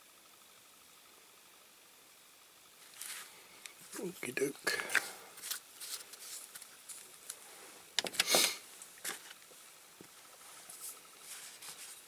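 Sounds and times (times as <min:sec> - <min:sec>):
scraping rustle: 0:10.3 - 0:12.0.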